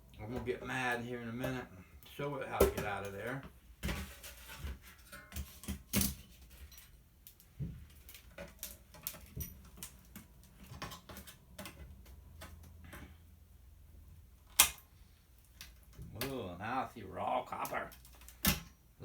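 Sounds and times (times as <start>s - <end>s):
hand tools prying at metal and plastic: 2.6s - 13.4s, 14.4s - 14.8s, 17.5s - 18.8s.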